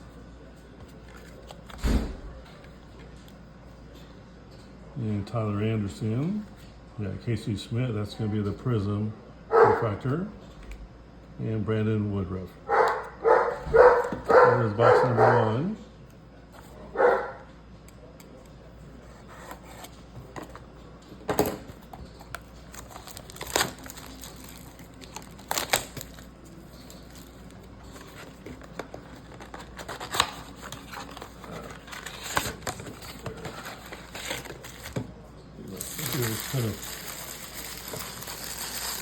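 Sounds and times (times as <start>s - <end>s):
wrappers crinkling and tearing: 22.6s - 35.0s, 35.6s - 39.0s.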